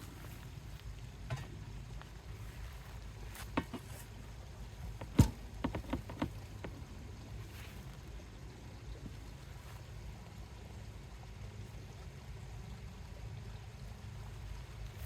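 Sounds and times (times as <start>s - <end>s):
low steady rumble: 0.0s - 15.0s
sharp knocks and clicks: 3.5s - 3.9s, 4.9s - 6.8s.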